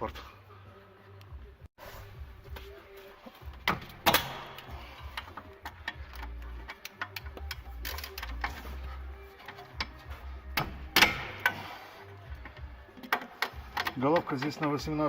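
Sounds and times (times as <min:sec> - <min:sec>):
metal hand tools clicking and knocking: 0:03.6 - 0:11.6, 0:12.4 - 0:15.0.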